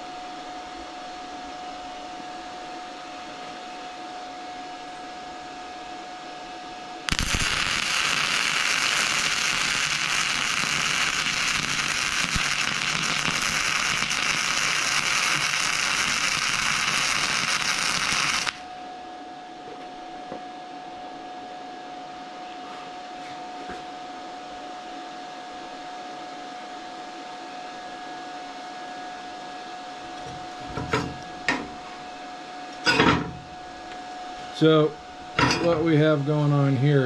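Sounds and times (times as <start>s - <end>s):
machine hum: 0.0s - 25.9s, 27.6s - 37.0s
arc welding crackle: 7.0s - 18.7s.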